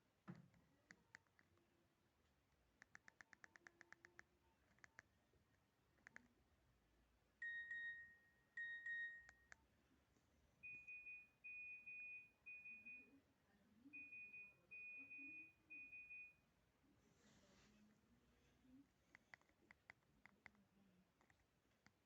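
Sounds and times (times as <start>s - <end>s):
phone electronic beeps: 7.4s - 9.6s, 10.6s - 13.1s, 13.9s - 16.4s.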